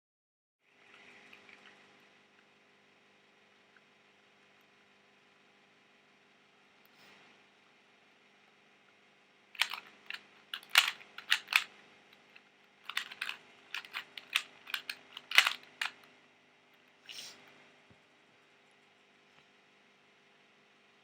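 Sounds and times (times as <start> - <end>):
puzzle cube clicking: 9.6 - 11.7, 12.9 - 16.0.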